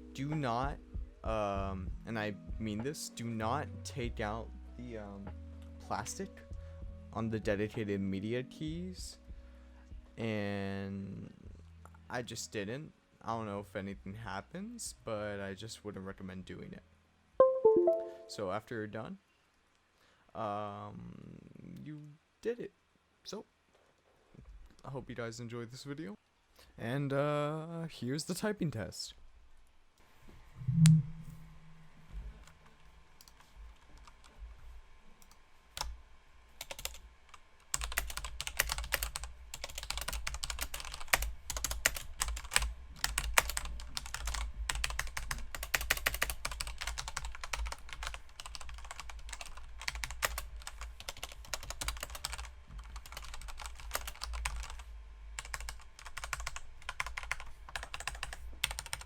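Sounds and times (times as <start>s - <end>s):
mechanical keyboard typing: 36.6s - 37.0s, 37.7s - 54.8s, 55.4s - 59.0s.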